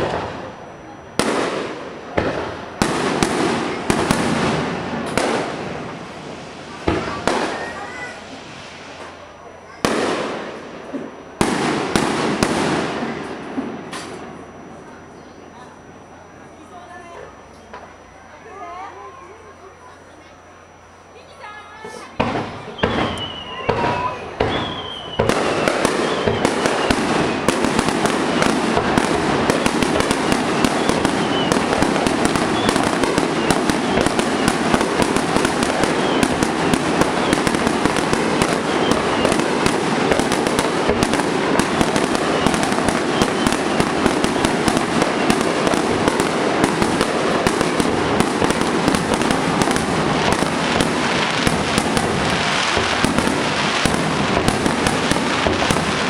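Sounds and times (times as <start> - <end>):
fireworks bursting and crackling: 0.0 - 16.5, 21.3 - 56.0.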